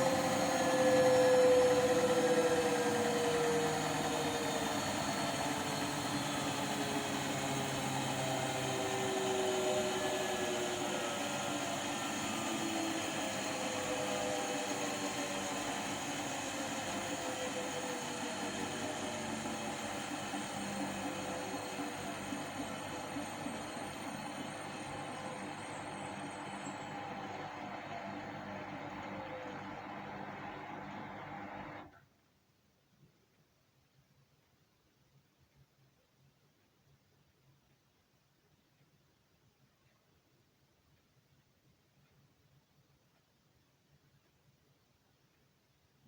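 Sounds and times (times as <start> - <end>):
washing machine hum: 0.0 - 32.0
washing machine whine: 0.0 - 32.0.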